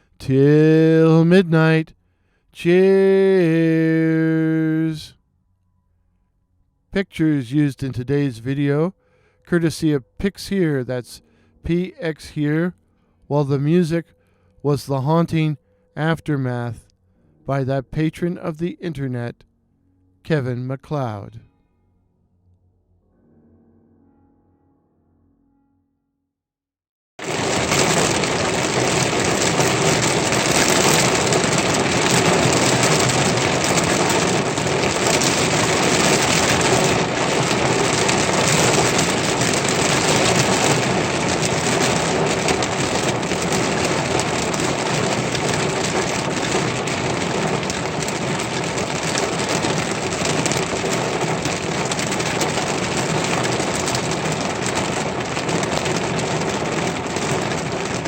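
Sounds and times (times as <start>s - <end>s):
heavy rain falling: 27.2s - 58.0s.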